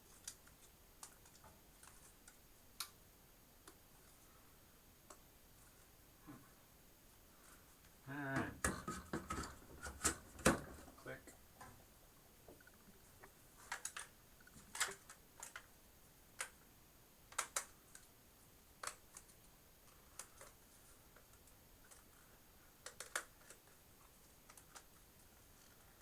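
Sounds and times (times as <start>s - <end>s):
plastic clicks and snaps: 2.8s - 3.0s, 17.3s - 18.1s, 18.8s - 19.4s, 22.8s - 23.6s.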